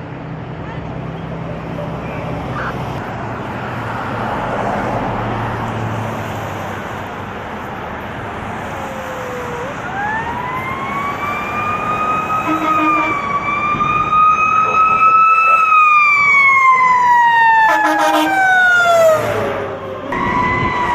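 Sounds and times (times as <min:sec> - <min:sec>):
traffic noise: 0:00.0 - 0:20.9
fire truck siren winding up: 0:09.8 - 0:19.4, 0:20.1 - 0:20.9.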